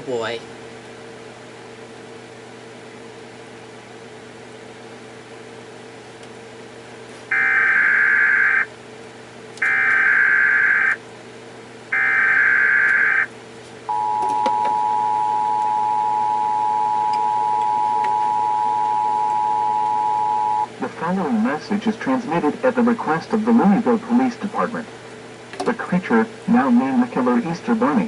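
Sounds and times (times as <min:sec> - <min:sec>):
two-tone attention signal: 0:07.3 - 0:08.7, 0:09.6 - 0:11.0, 0:12.0 - 0:13.3, 0:13.9 - 0:20.7
warbling data tone bursts: 0:07.3 - 0:08.7, 0:09.6 - 0:11.0, 0:12.0 - 0:13.3.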